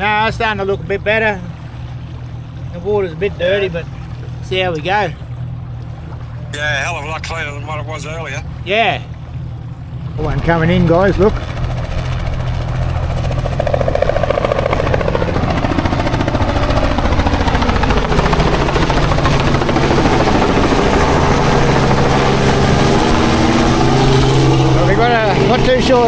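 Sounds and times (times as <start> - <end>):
helicopter rotor beating: 6.5 - 26.0.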